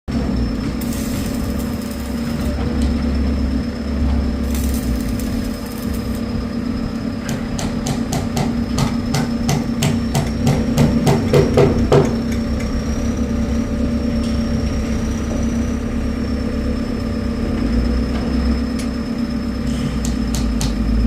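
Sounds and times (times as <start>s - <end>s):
machine hum: 0.1s - 21.0s
arc welding crackle: 0.5s - 7.6s
hammer strikes on metal: 7.2s - 12.4s, 20.0s - 20.8s.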